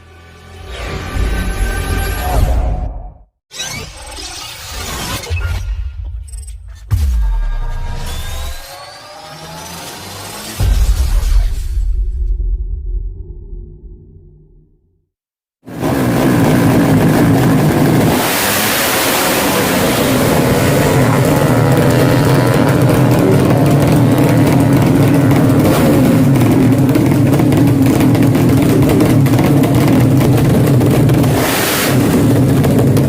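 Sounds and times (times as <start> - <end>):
drag racing engines revving: 8.2 - 10.6, 15.7 - 33.0.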